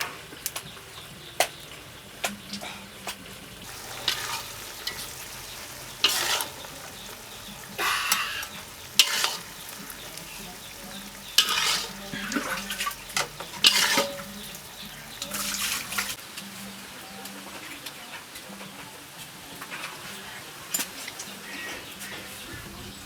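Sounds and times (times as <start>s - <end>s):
food frying: 0.0s - 16.5s
spatula scraping frying pan: 3.6s - 16.2s.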